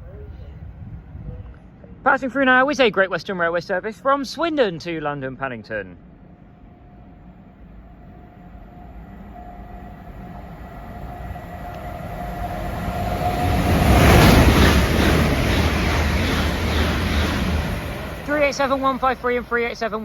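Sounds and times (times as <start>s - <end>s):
train whine: 5.9s - 20.0s
wheels clattering on rails: 11.7s - 20.0s.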